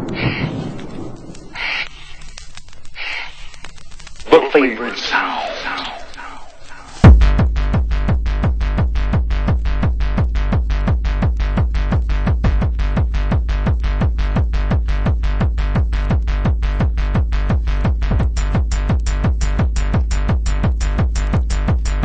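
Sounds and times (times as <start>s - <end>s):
techno electronic beat: 4.3s - 22.0s
deep bass: 7.0s - 22.0s.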